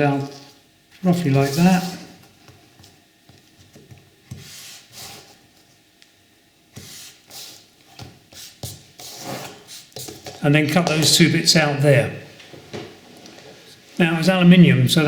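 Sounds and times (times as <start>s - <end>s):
pen scratching on cardboard: 8.3s - 10.3s.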